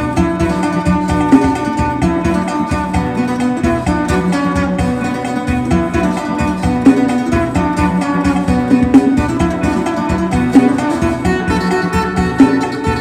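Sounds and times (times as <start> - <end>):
plucked lute melody: 0.0 - 13.0.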